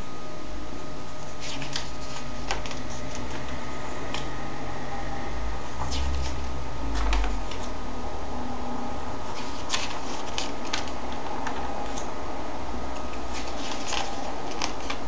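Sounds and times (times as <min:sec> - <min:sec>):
paper pages rustling: 0:01.2 - 0:04.3, 0:09.2 - 0:12.1, 0:13.0 - 0:15.0
low handling rumble: 0:03.6 - 0:09.1.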